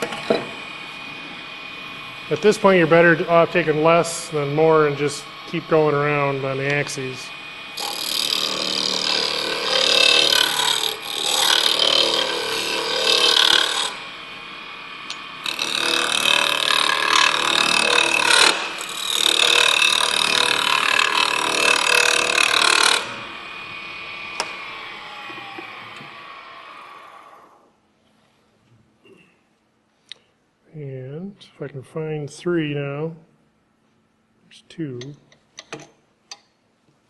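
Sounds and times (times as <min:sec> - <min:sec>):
lathe humming: 0:00.0 - 0:27.6
gouge cutting wood on lathe: 0:01.0 - 0:14.3, 0:15.1 - 0:23.5.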